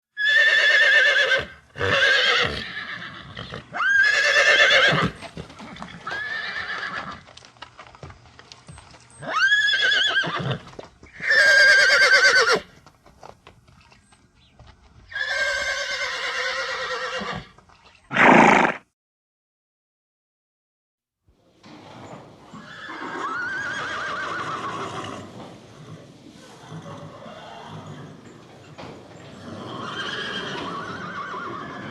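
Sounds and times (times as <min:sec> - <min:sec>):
horse whinnying: 0:00.1 - 0:07.2, 0:09.2 - 0:12.7, 0:15.1 - 0:18.9, 0:22.5 - 0:28.2, 0:29.2 - 0:31.9.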